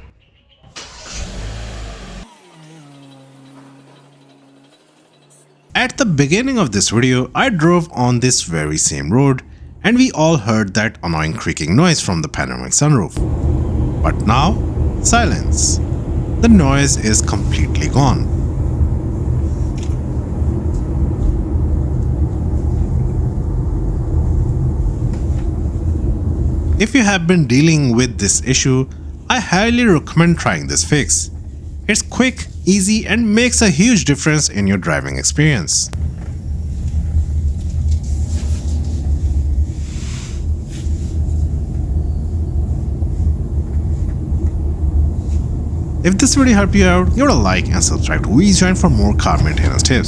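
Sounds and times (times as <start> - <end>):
road and tyre rumble in car: 0.8 - 6.6, 13.2 - 32.7, 35.5 - 50.0.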